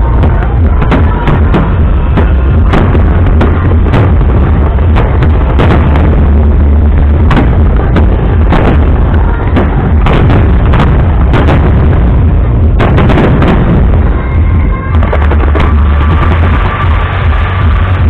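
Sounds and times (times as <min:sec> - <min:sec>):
heavy low rumble: 0:00.0 - 0:18.0.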